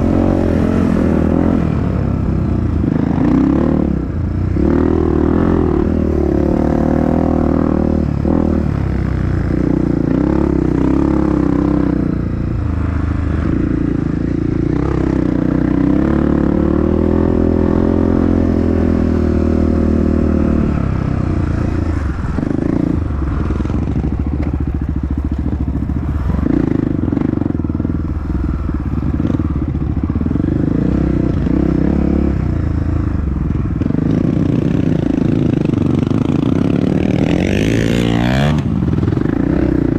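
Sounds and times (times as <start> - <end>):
dirt bike engine revving: 33.8 - 39.9.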